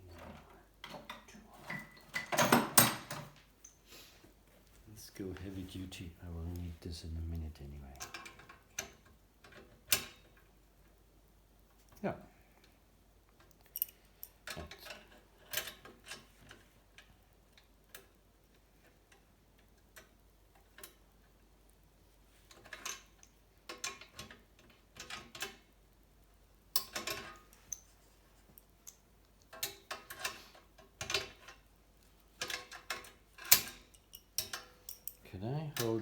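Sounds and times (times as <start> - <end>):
metal tools clinking: 13.6 - 15.0, 32.4 - 35.2.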